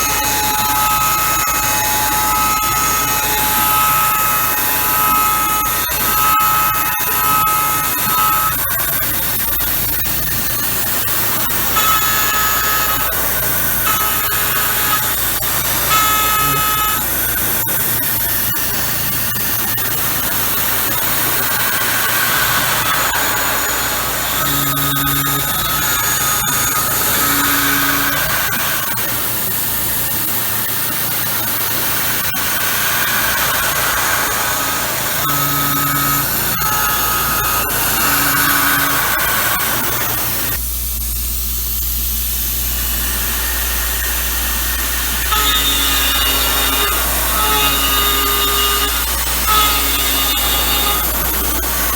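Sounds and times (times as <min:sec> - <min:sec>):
short whining tones: 0:00.0 - 0:09.0, 0:11.2 - 0:40.6, 0:43.5 - 0:51.9
mill cutting metal hiss: 0:00.0 - 0:51.9
low machine hum: 0:31.5 - 0:51.9.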